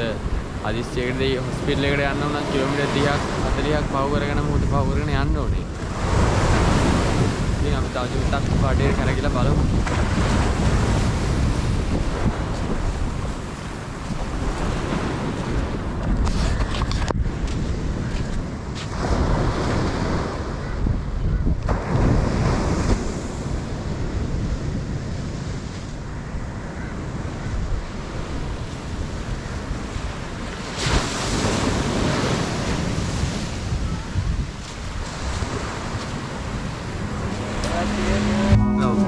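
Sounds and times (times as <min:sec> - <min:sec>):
sea waves washing ashore: 0:00.0 - 0:20.7, 0:21.6 - 0:39.0
wind buffeting microphone: 0:00.0 - 0:39.0.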